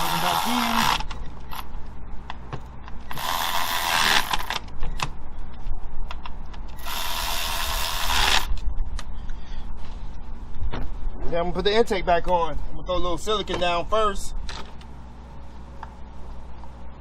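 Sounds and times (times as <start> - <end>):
hand ratchet clicking: 3.1 - 4.6.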